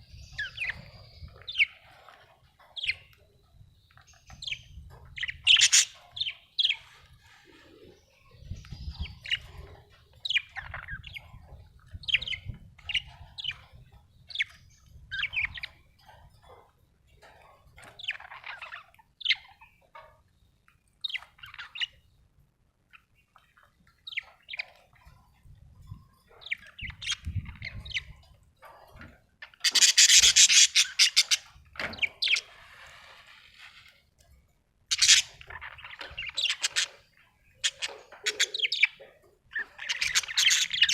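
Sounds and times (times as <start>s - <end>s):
budgerigars chirping: 0.3s - 1.9s, 3.9s - 7.6s, 26.3s - 28.1s, 29.4s - 32.9s, 34.9s - 37.0s, 37.6s - 40.9s.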